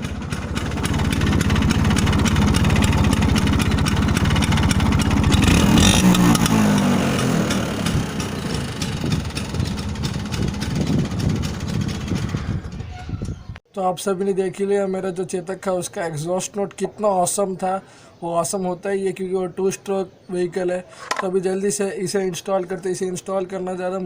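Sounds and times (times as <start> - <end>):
scooter engine revving and popping: 0.0 - 12.8.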